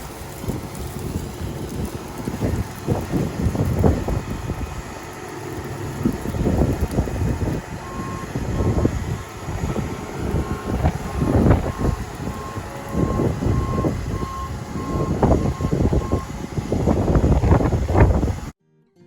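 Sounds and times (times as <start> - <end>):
low rumble with knocks: 5.9 - 18.5
back-up alarm beeping: 7.1 - 17.1.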